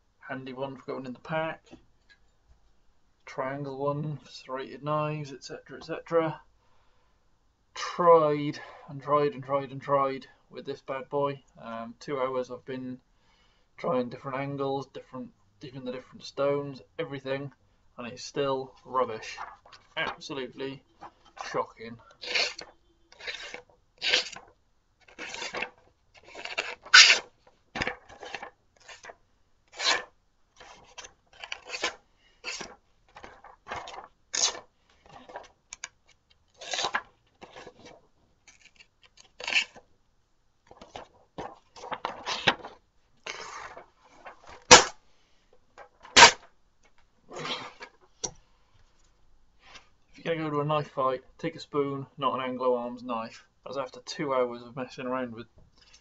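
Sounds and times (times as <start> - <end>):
knife rasping through paper: 22.2 - 24.4, 25.0 - 27.3, 29.7 - 32.8
paper snapping: 44.6 - 45.0, 46.0 - 46.5.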